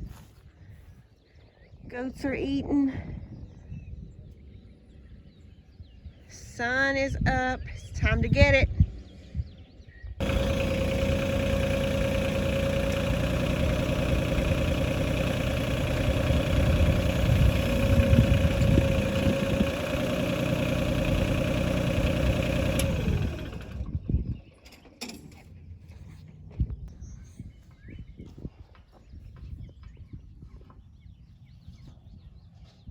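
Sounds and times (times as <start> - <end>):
machine engine whining: 10.2 - 24.0.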